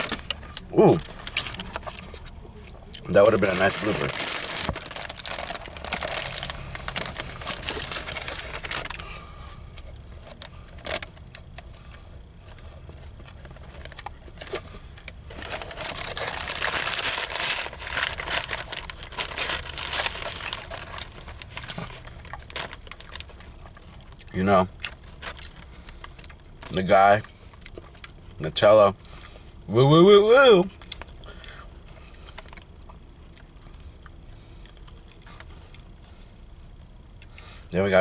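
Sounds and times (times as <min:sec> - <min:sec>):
paper wrapper crumpling: 0:00.0 - 0:02.1, 0:03.0 - 0:09.2, 0:10.2 - 0:11.7, 0:12.9 - 0:26.8.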